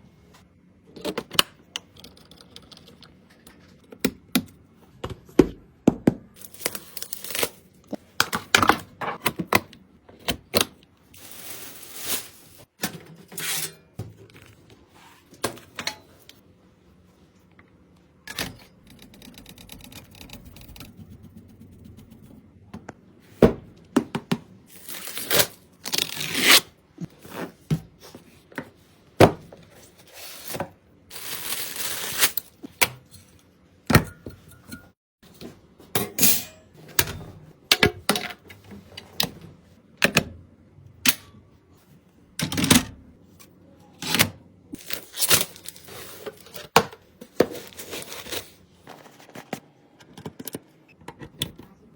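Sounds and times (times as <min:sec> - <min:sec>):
packaging rustling: 0:11.1 - 0:12.7, 0:31.1 - 0:32.5, 0:44.8 - 0:46.6, 0:47.5 - 0:49.5
computer parts clicking and knocking: 0:18.3 - 0:20.9.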